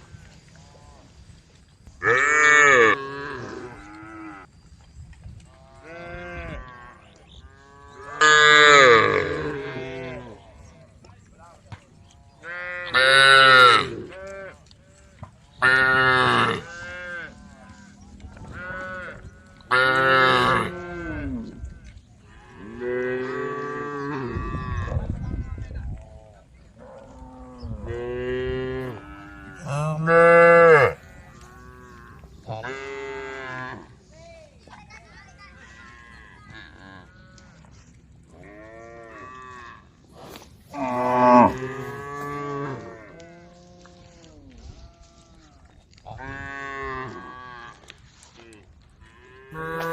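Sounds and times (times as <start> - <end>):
cows mooing: 2.0 - 4.5, 5.6 - 10.4, 12.4 - 14.6, 15.6 - 25.0, 26.8 - 34.0, 40.7 - 44.2, 49.1 - 49.9.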